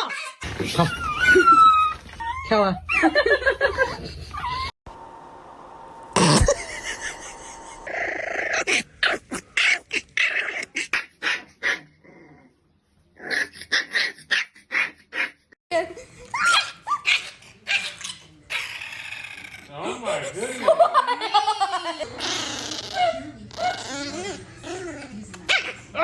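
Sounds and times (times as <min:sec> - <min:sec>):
puppy growling and yipping: 0:07.2 - 0:12.6, 0:13.2 - 0:15.4, 0:16.4 - 0:19.8, 0:22.0 - 0:26.0.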